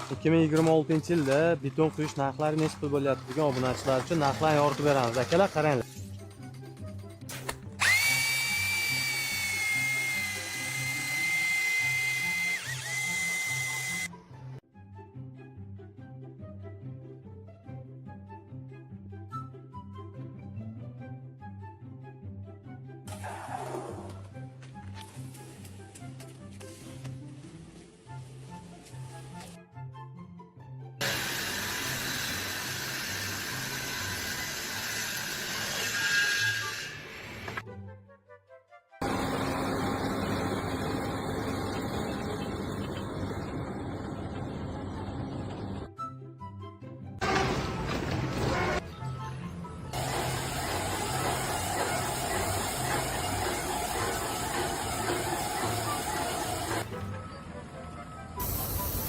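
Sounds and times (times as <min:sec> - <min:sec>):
background music: 0:00.0 - 0:31.3, 0:37.6 - 0:39.8, 0:44.6 - 0:59.0
power tool motor whining: 0:07.8 - 0:14.1, 0:31.0 - 0:37.6, 0:50.0 - 0:56.9
loud steady hiss: 0:58.4 - 0:59.0.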